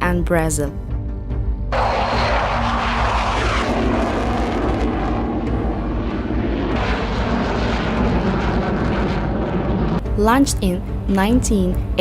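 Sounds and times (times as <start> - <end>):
jet engine roar: 1.7 - 10.0.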